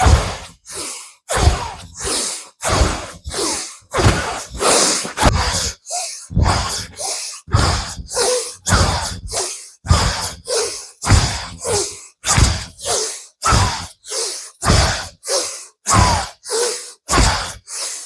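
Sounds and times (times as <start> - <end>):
rapid rhythmic breathing: 0.0 - 18.0.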